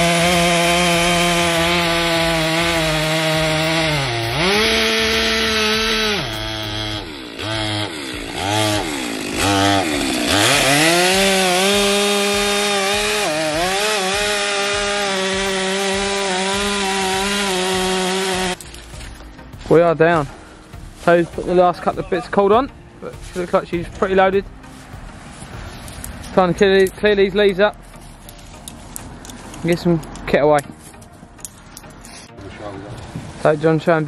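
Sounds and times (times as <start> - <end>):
chainsaw cutting wood: 0.0 - 19.2.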